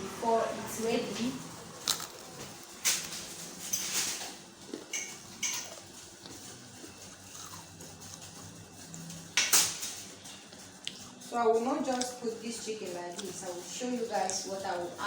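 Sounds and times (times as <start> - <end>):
kitchen clicks and knocks: 2.4 - 5.8, 9.3 - 10.2.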